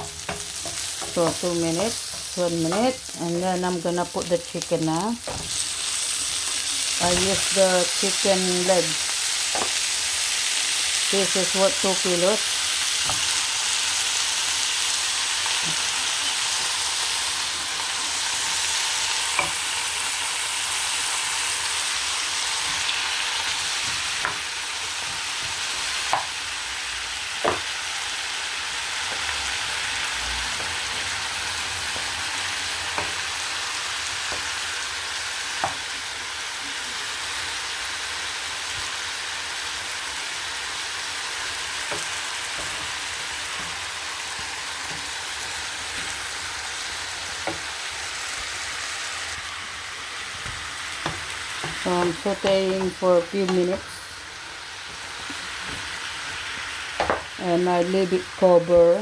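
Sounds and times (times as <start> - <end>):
chicken sizzling in hot oil: 0.0 - 59.0.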